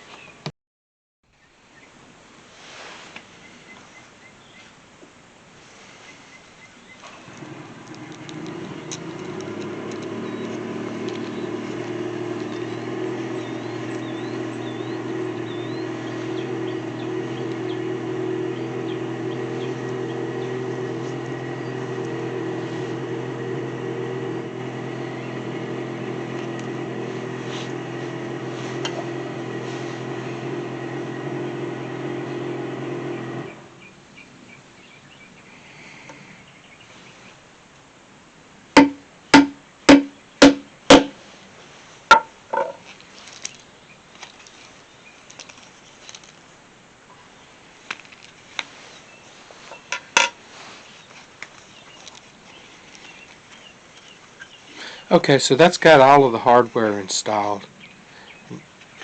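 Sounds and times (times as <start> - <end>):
faint birds chirping: 0.0 - 0.5, 1.3 - 2.1, 3.2 - 59.0
machine humming: 7.1 - 33.9.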